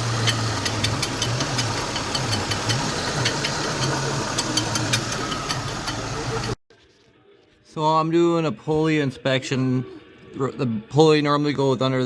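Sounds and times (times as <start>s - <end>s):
belt and pulley clicks: 0.0s - 6.6s
car engine idling: 0.0s - 6.6s.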